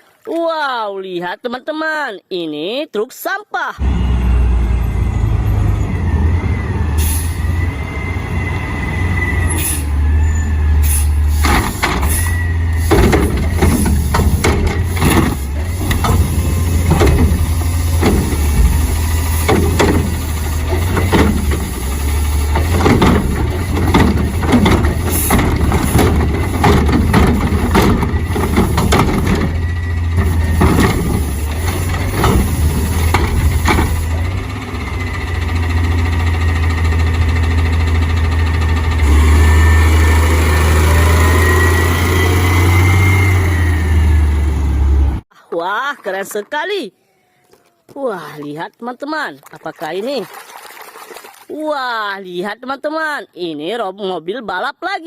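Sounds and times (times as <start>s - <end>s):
truck engine rumbling: 3.8s - 45.3s
clanks and knocks: 11.4s - 21.9s, 22.5s - 34.1s
thin squeal: 12.1s - 12.9s.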